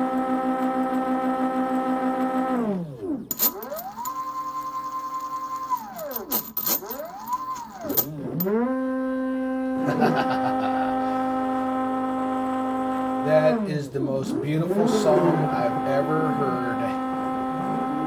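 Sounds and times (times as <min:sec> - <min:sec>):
stepper motors whining: 0:03.0 - 0:09.5, 0:10.9 - 0:18.0.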